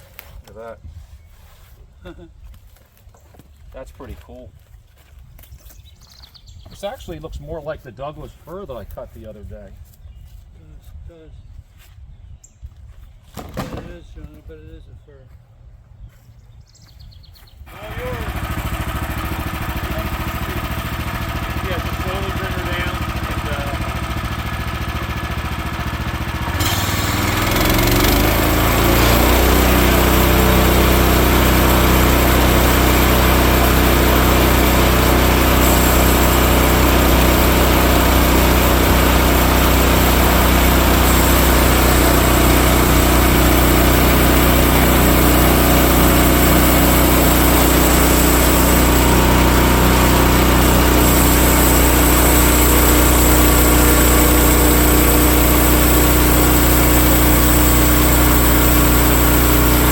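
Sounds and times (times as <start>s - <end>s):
sawmill gas engine running: 17.7s - 59.9s
band blade cutting log: 26.4s - 59.9s.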